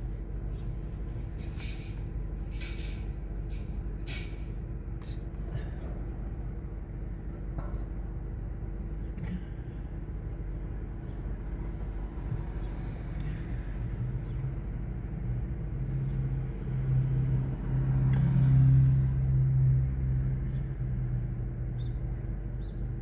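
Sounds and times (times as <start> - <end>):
engine humming: 0.0 - 23.0.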